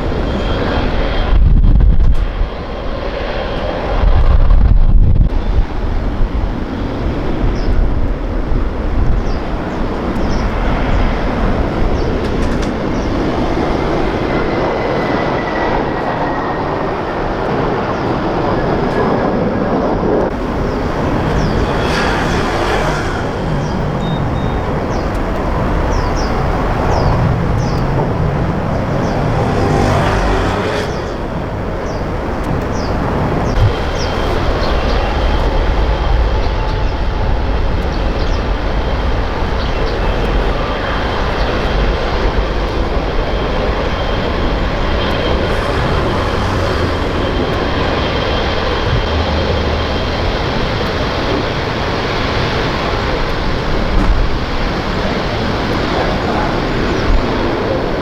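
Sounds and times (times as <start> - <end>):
jet engines rumbling: 0.0 - 58.0
faint high whine: 20.3 - 36.4, 39.5 - 50.1.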